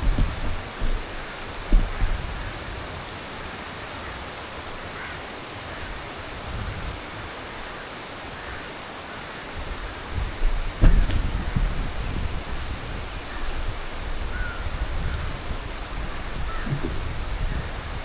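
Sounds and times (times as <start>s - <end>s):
low thump: 0.0s - 2.5s, 10.8s - 12.4s, 16.4s - 17.6s
heavy rain falling: 0.0s - 18.0s.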